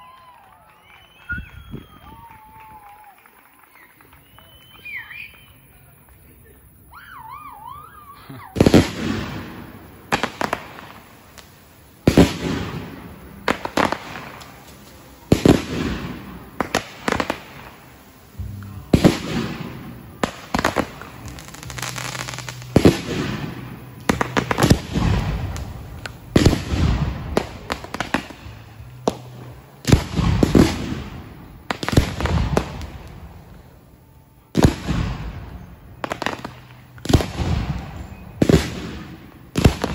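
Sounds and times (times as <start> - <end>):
fireworks bangs: 0.0 - 33.8, 34.5 - 39.9.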